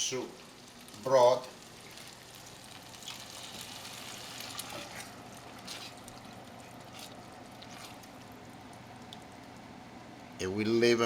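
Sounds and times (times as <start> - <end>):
rice sizzling in a hot pan: 0.0 - 8.9
stirring scrapes: 4.3 - 8.2.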